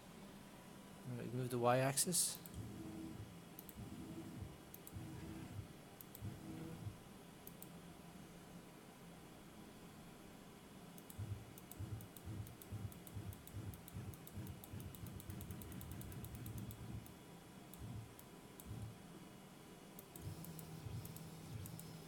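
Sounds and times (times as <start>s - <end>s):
rapid sharp clicks: 11.0s - 18.9s.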